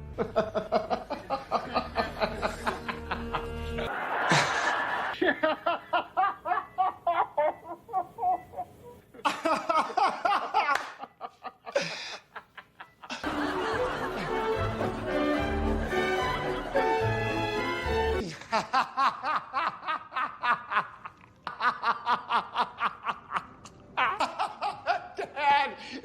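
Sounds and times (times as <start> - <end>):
background music: 0.0 - 5.1, 13.2 - 18.3
people laughing: 0.2 - 26.0.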